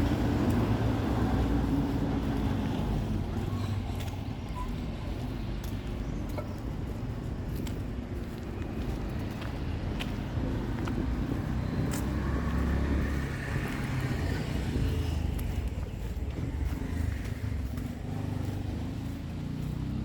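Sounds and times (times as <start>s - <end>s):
vehicle engine rumbling: 0.0s - 20.0s.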